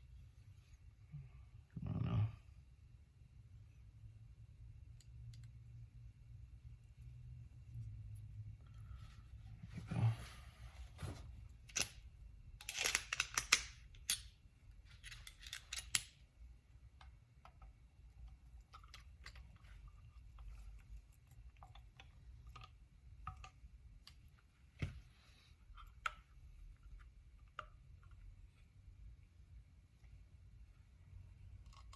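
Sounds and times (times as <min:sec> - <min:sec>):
metal parts scraping and rattling: 0:12.6 - 0:14.3, 0:14.9 - 0:16.2.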